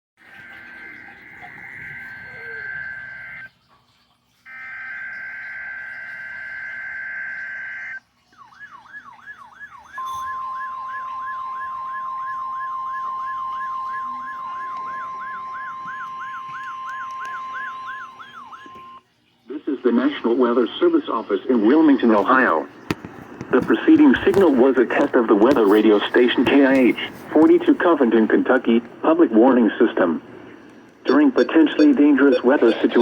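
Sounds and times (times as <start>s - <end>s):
digital data tone bursts: 0.2s - 3.5s, 4.5s - 8.0s, 10.0s - 19.0s, 31.1s - 33.0s
steady warning alarm tone: 0.2s - 3.5s, 4.5s - 19.0s, 31.0s - 33.0s
sweeping siren tone: 0.2s - 3.5s, 4.5s - 19.0s, 31.1s - 33.0s.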